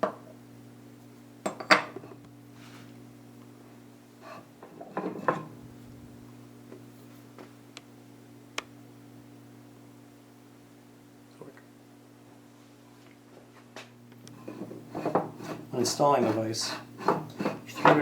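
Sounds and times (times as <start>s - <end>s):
steady low hum: 0.1s - 18.0s.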